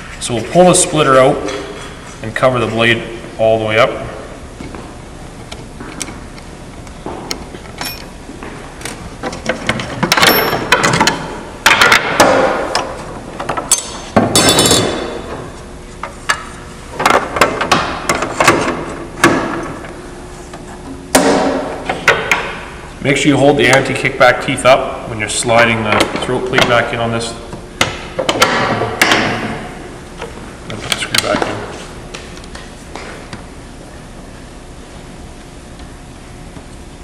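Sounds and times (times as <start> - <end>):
metal clanks and clinks: 13.7 - 15.0.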